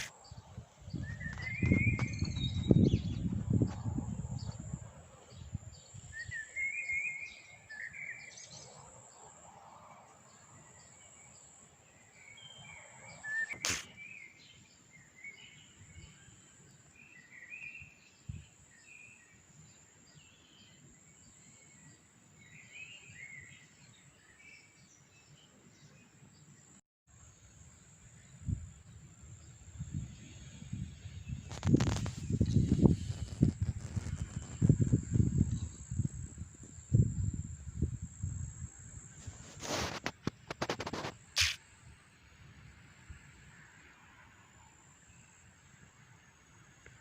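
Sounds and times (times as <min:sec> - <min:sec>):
songbirds chirping: 0:00.0 - 0:26.8
sharp click: 0:13.5 - 0:14.0, 0:39.9 - 0:41.6
high insect hum: 0:26.6 - 0:47.0.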